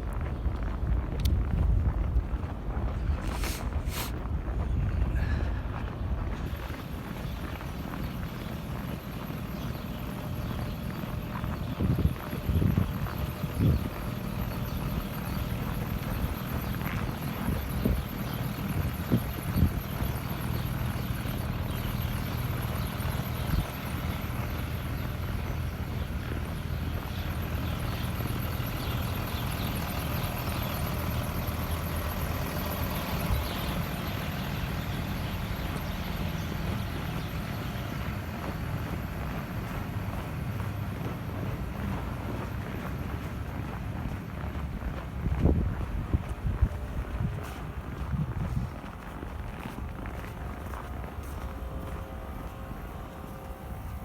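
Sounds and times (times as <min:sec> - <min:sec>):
footsteps: 0:00.0 - 0:18.0, 0:36.0 - 0:54.0
vehicle engine rumbling: 0:00.0 - 0:54.0.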